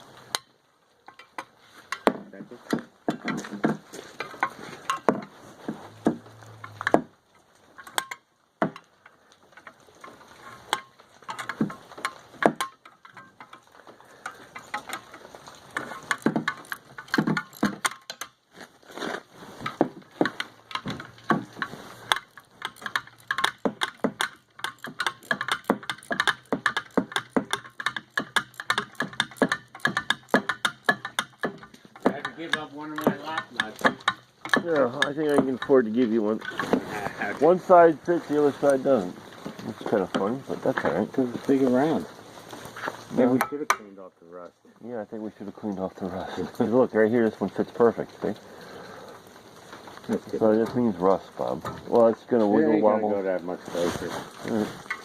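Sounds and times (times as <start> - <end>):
wrench clicking on metal bolts: 7.8 - 8.3, 15.7 - 18.4, 20.2 - 35.8.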